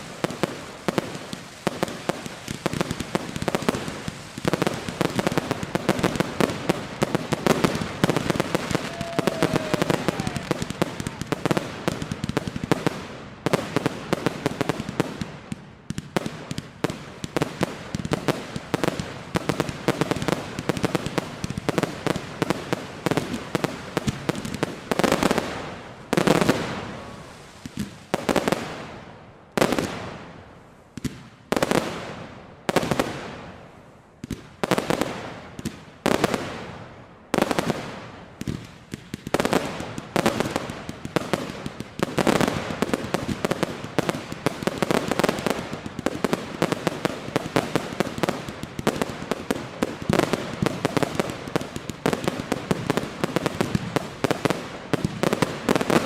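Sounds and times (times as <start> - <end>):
fireworks bursting and crackling: 0.0 - 56.0
heavy firework booms: 4.5 - 13.0.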